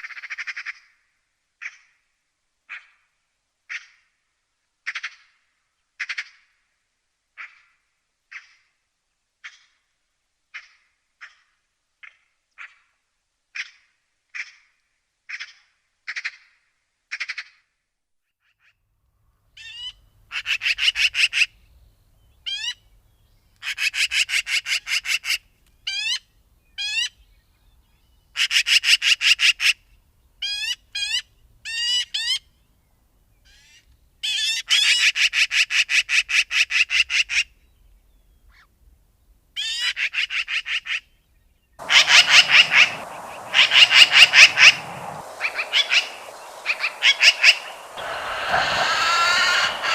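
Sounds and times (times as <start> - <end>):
magpie chattering: 41.8 - 49.9.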